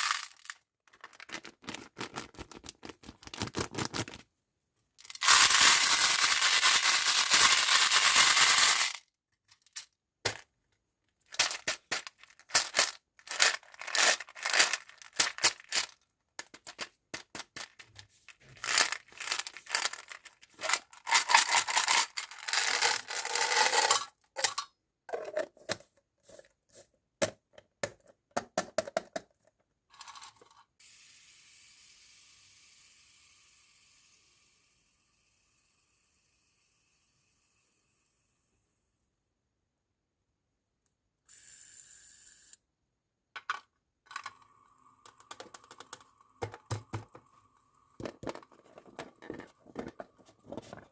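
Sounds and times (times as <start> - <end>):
plastic packaging tearing and crinkling: 0.0 - 4.2, 11.3 - 16.8, 17.4 - 23.0
small hard items clicking: 0.0 - 4.2, 5.0 - 10.4, 11.3 - 25.4, 43.4 - 47.3, 48.0 - 50.9.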